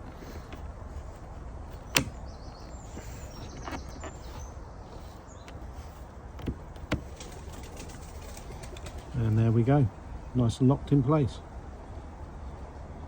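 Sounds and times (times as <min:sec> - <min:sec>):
faint birds chirping: 0:00.0 - 0:13.0
plastic trim clicking into place: 0:01.8 - 0:02.2.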